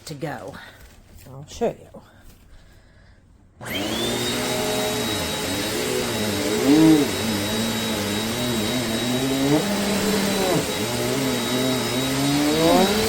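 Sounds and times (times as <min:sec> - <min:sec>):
vacuum cleaner motor whine: 0:03.6 - 0:13.0.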